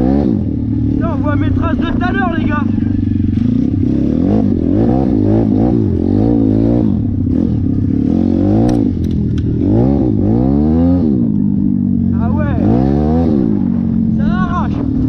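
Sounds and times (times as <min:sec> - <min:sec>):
dirt bike engine revving: 0:00.0 - 0:15.0
sharp clicks: 0:08.6 - 0:09.6.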